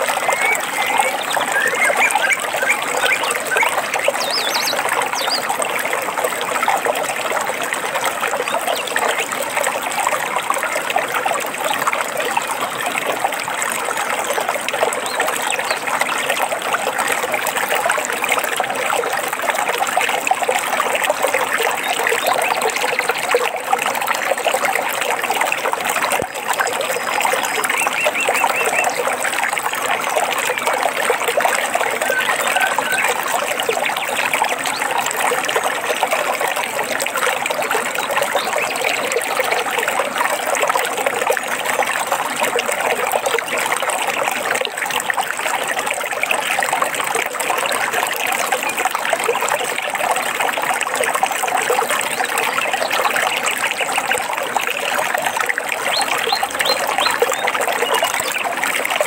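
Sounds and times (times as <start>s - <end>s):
stream trickling and babbling: 0.0s - 59.0s
faint bird chirps: 0.2s - 5.4s, 32.0s - 33.2s.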